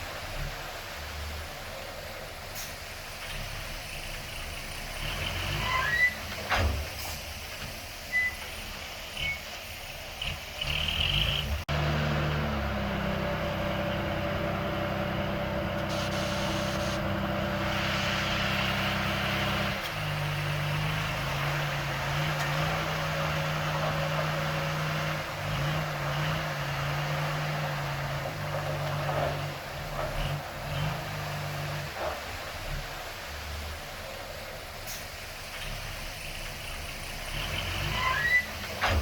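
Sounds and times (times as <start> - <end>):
heavy diesel machinery running: 6.8 - 30.9.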